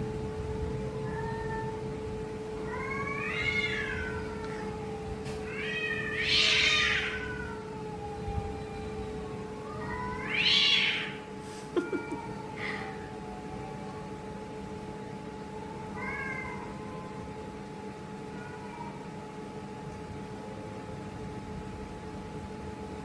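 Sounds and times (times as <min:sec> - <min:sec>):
cat meowing and yowling: 0:02.6 - 0:11.2, 0:16.0 - 0:17.2, 0:18.3 - 0:19.1.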